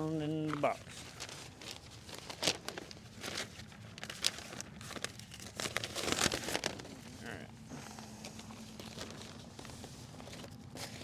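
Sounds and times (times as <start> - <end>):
newspaper rustling and crinkling: 0.0 - 11.0.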